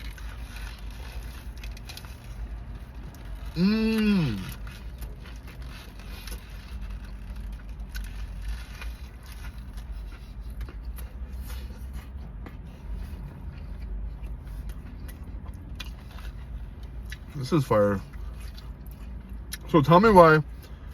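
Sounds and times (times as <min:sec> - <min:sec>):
person chewing food: 0:00.0 - 0:19.7
person humming mmm: 0:03.5 - 0:04.6.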